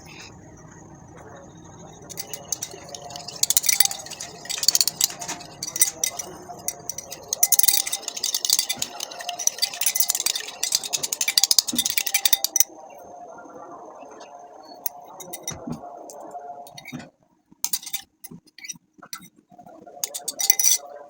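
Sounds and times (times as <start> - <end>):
spoon clinking against glass bowl: 2.1 - 12.7, 14.9 - 15.6, 16.7 - 17.0, 17.7 - 19.3, 20.0 - 20.8.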